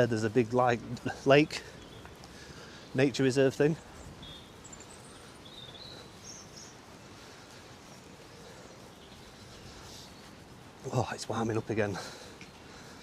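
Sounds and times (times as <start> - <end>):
faint background hiss: 0.0 - 13.0
high bird chirps: 3.8 - 7.0.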